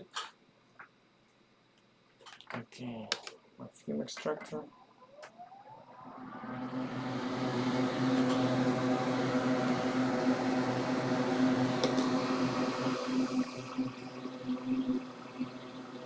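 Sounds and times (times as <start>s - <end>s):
extractor fan whirring: 5.8s - 16.0s.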